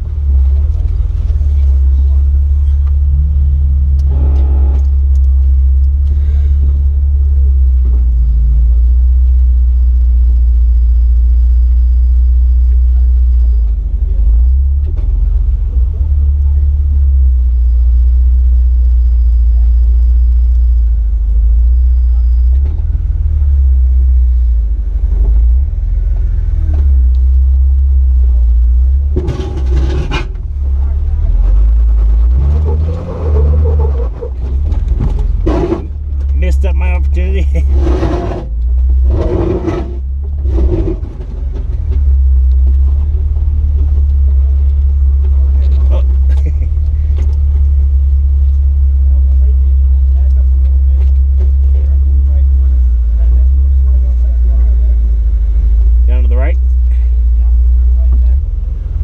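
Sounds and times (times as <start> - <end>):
car engine running steadily: 0.0 - 59.0
loud rough engine burst: 32.4 - 41.2.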